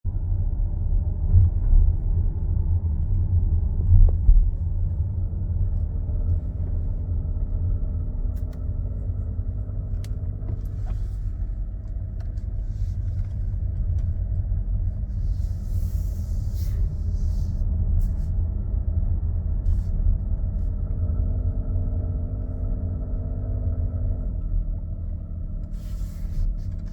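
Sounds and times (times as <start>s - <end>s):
car engine rumble: 0.0s - 26.9s.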